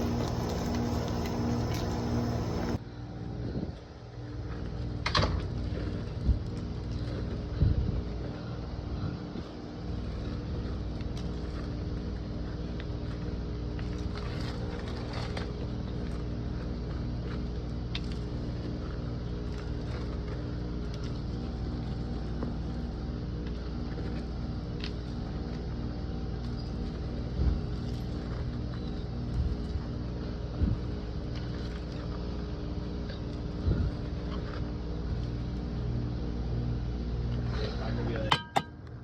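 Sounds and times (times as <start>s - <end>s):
engine idling: 0.0s - 2.8s.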